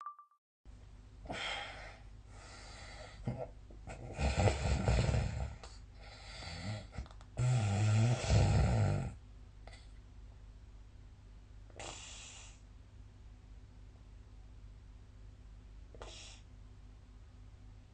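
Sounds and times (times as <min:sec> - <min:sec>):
person snoring: 0:04.0 - 0:05.6, 0:06.4 - 0:09.2.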